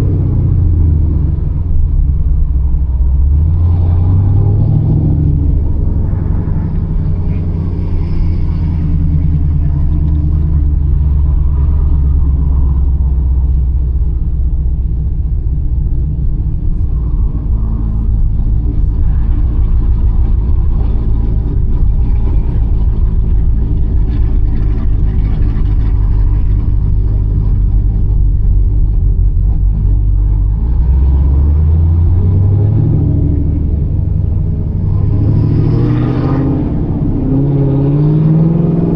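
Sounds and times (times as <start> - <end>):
car engine running: 0.0 - 38.9
road noise: 0.0 - 38.9.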